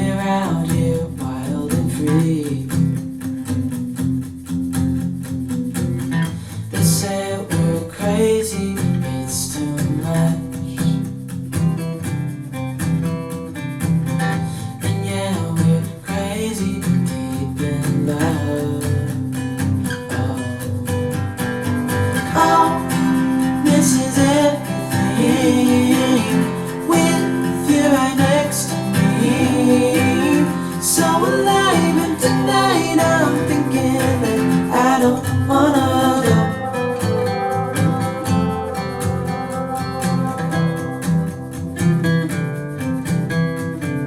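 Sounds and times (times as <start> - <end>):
strummed acoustic guitar: 0.0 - 44.0
steady bass: 19.8 - 42.2
gliding melodic lead: 21.9 - 42.8
song over loudspeakers: 22.3 - 40.7.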